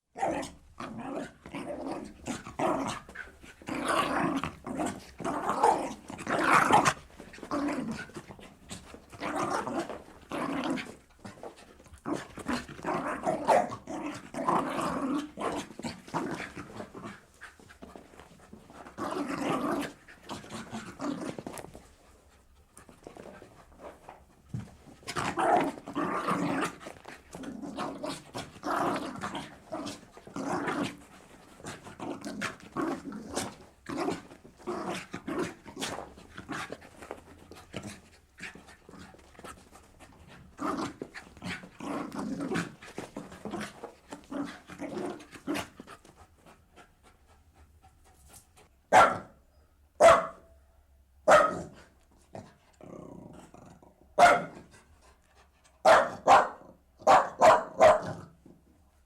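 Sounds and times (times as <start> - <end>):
dog growling and panting: 0.3 - 48.8, 51.7 - 55.8
dog barking sharply: 48.9 - 49.4, 50.0 - 50.5, 51.3 - 51.6, 54.2 - 54.5, 55.9 - 58.1.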